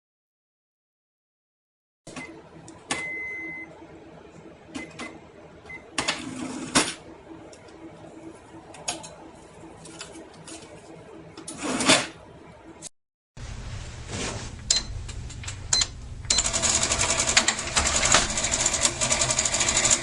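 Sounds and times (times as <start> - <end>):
cash register beep: 2.1 - 3.8, 4.7 - 7.0, 14.7 - 15.0, 15.7 - 20.0
cash register mechanical rattling: 6.0 - 7.0, 16.3 - 20.0.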